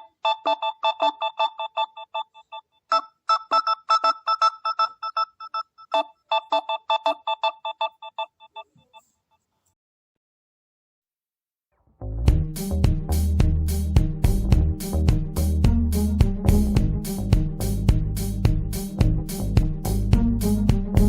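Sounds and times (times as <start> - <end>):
phone ringtone melody: 0.0 - 8.8.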